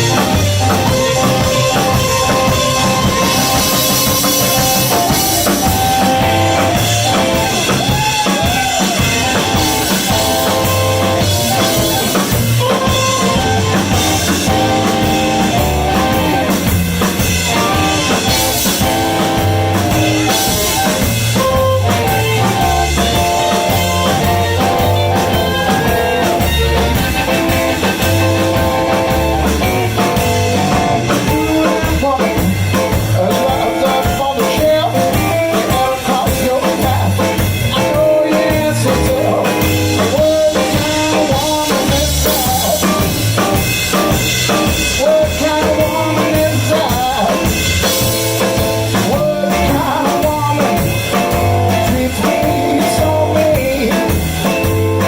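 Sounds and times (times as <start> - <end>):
bass: 0.0 - 55.0
drum kit beat: 0.0 - 55.0
electric guitar: 0.0 - 55.0.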